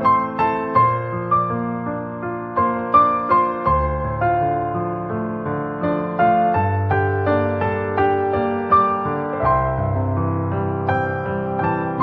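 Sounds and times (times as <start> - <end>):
gentle piano melody: 0.0 - 12.0.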